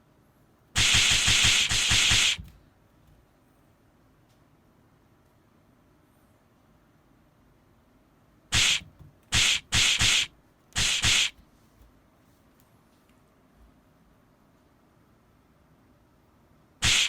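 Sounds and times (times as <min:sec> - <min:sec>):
punch sound effects: 0:00.8 - 0:02.5, 0:08.5 - 0:11.3.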